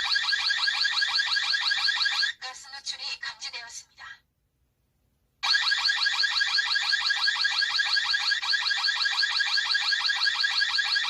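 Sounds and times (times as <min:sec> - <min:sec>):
gas alarm electronic siren: 0:00.0 - 0:02.4, 0:05.4 - 0:11.0.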